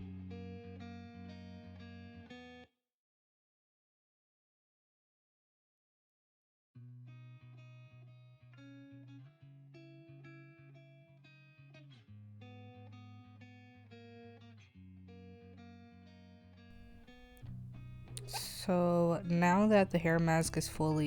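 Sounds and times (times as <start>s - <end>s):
quiet instrumental music: 16.8s - 21.0s.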